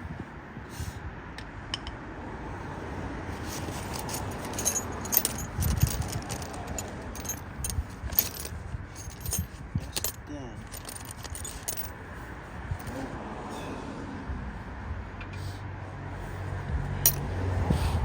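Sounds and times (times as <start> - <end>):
small metal parts clinking: 3.4 - 12.0, 12.8 - 13.0, 17.0 - 17.3.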